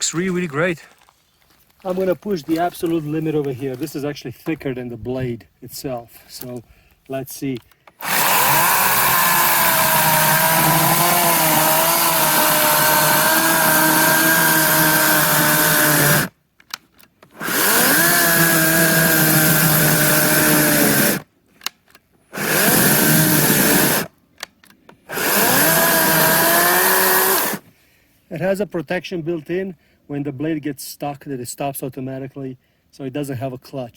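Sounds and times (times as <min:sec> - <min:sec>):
electric chainsaw motor whining: 0:08.0 - 0:16.3, 0:17.3 - 0:21.2, 0:22.3 - 0:24.1, 0:25.1 - 0:27.6.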